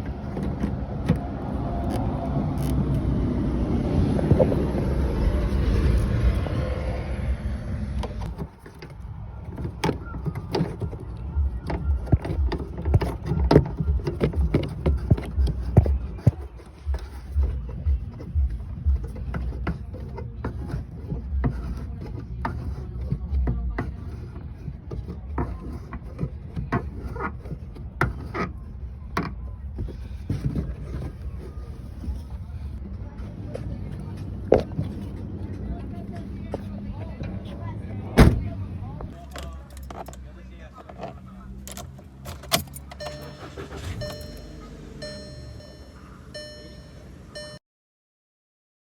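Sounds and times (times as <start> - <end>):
plastic parts clicking and knocking: 8.2 - 31.5
steady low rumble: 11.0 - 22.5
car warning chime: 42.8 - 47.6.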